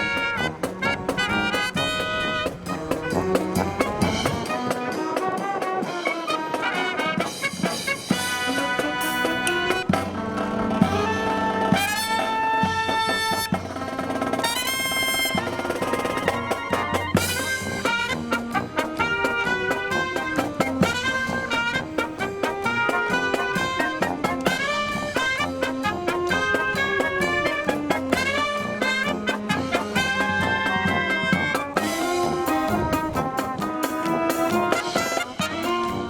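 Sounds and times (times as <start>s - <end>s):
brass band playing: 0.0s - 36.0s
wind buffeting microphone: 32.2s - 33.6s.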